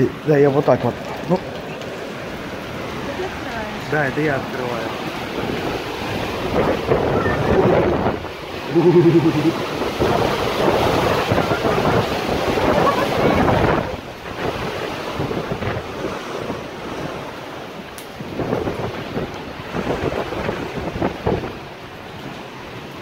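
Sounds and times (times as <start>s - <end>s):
torrential rain: 0.0s - 23.0s
wind buffeting microphone: 0.8s - 23.0s
short low humming tone: 8.7s - 9.6s.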